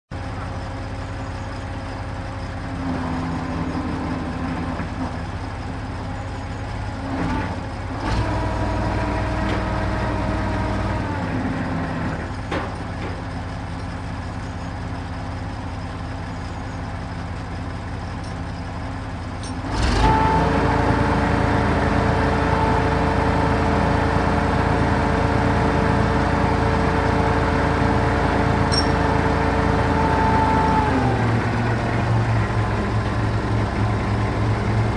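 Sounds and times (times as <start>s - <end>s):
truck crane engine running: 0.1s - 34.9s
metallic knocks of chains: 18.2s - 18.6s, 28.7s - 29.0s.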